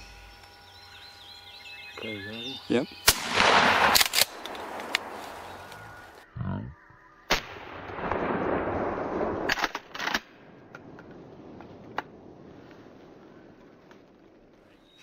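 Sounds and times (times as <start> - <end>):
shotgun shot: 3.0 - 5.2
rustling noise: 4.5 - 6.2, 11.0 - 14.8.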